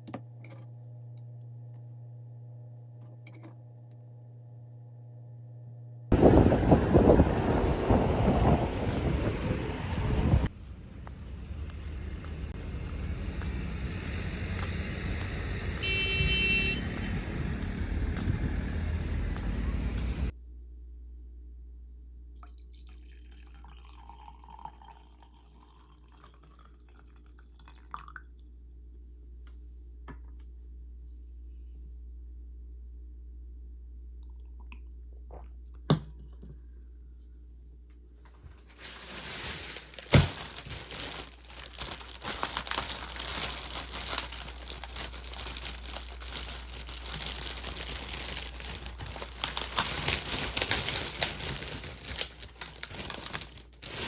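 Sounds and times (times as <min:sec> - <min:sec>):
steady low hum: 0:00.6 - 0:22.3
wind buffeting microphone: 0:06.1 - 0:20.3.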